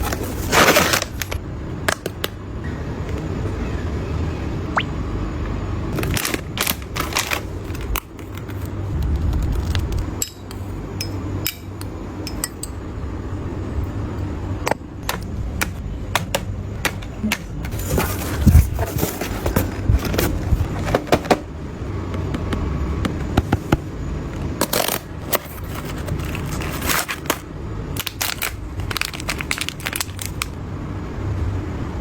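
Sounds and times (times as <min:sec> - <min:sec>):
packaging and containers clinking: 0:00.0 - 0:01.4, 0:24.6 - 0:27.4, 0:28.0 - 0:30.5.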